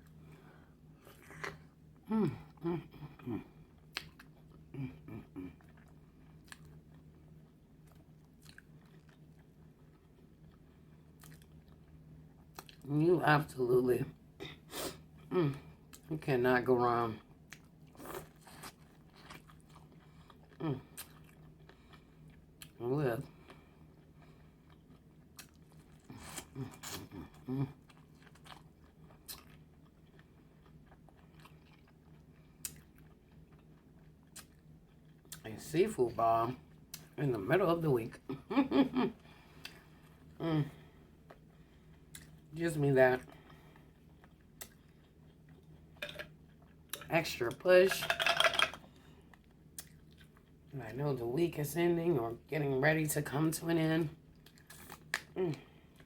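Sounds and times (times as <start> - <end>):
person chewing: 1.0 - 12.8, 17.4 - 22.8, 23.4 - 35.4, 39.2 - 42.5, 43.2 - 47.1, 48.0 - 50.7, 54.3 - 56.0.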